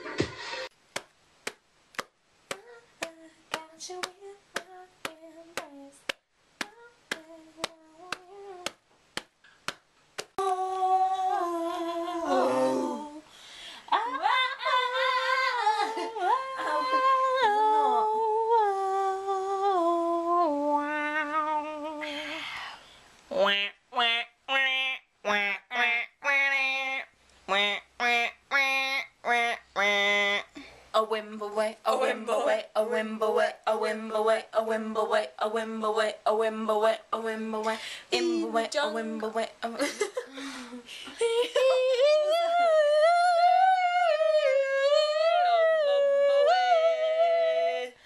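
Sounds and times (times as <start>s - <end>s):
finger snaps: 0.9s - 10.8s
person humming a melody: 2.5s - 6.0s, 6.6s - 8.8s, 10.4s - 13.3s, 14.8s - 22.4s, 41.2s - 48.0s.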